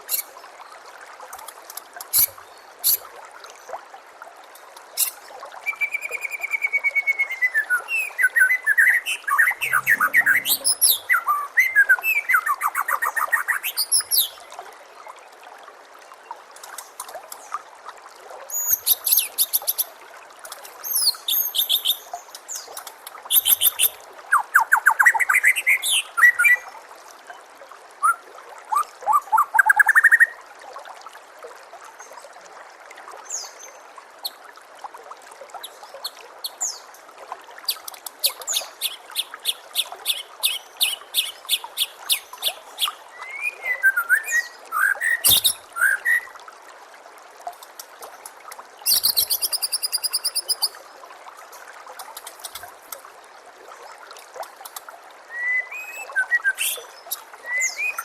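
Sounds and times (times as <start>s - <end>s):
trickling water: 0.0s - 58.0s
bird singing whistles and trills: 5.6s - 14.3s, 38.5s - 46.3s, 48.9s - 50.7s, 55.3s - 58.0s.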